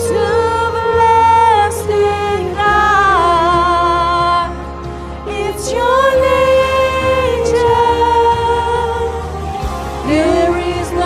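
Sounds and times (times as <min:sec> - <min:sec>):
band accompaniment: 0:00.6 - 0:11.0
person singing: 0:05.2 - 0:11.0.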